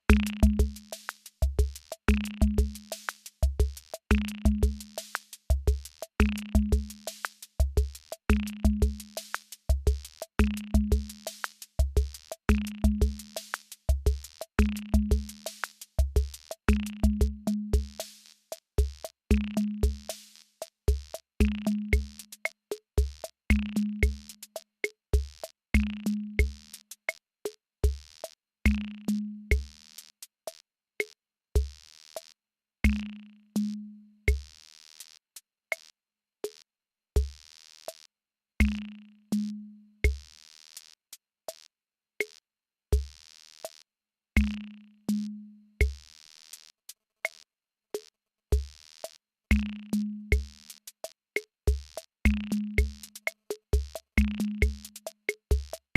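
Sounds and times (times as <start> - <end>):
drum machine beat: 0.0 - 24.6, 25.2 - 26.8, 27.8 - 29.8, 40.1 - 40.3, 43.0 - 43.2, 44.4 - 44.6, 45.8 - 46.1, 48.6 - 48.8, 49.5 - 55.9
low-pitched drum: 0.1 - 9.1, 9.7 - 18.0, 52.3 - 53.1, 53.8 - 55.7
hissy snare and hi-hat hits: 0.1 - 24.6, 50.3 - 55.9.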